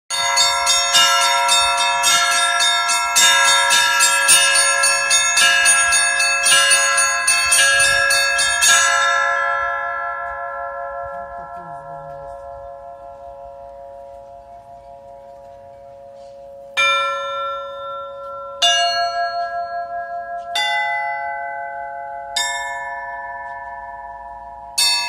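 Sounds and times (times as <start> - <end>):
church bells ringing: 0.1 - 25.0.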